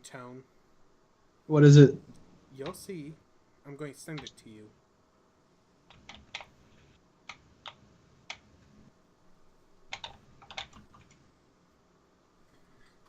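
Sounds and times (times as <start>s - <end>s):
computer keyboard typing: 5.9s - 6.6s, 9.9s - 11.2s.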